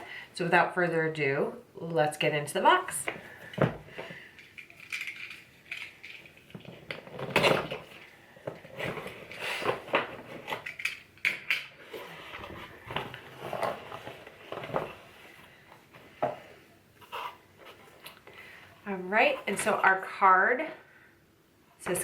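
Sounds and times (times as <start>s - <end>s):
cardboard box packaging rustling: 6.2s - 10.8s, 11.8s - 16.2s.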